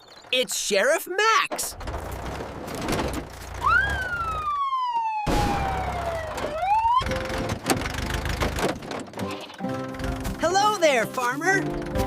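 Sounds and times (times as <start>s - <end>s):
police siren wailing: 3.6s - 7.5s.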